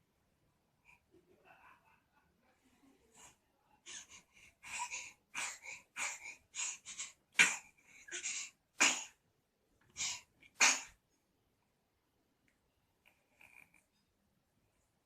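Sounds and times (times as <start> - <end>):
baby breathing quickly: 3.9 - 8.6, 9.9 - 10.3
baby sneezing: 3.9 - 9.2, 10.0 - 11.0.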